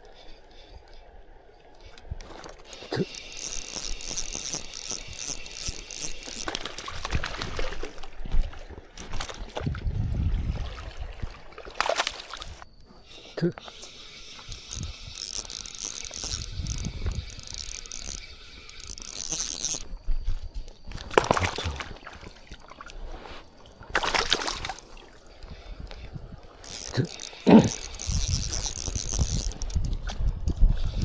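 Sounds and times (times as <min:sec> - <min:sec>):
fishing reel whirring and ratcheting: 0:01.8 - 0:07.8, 0:13.7 - 0:20.0, 0:24.6 - 0:31.0.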